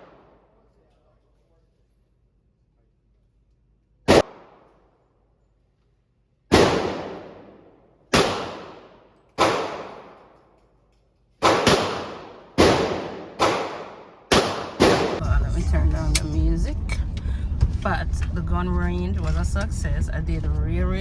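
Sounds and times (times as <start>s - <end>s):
gunshots with echo: 4.1s - 4.7s, 6.5s - 10.4s, 11.4s - 15.2s.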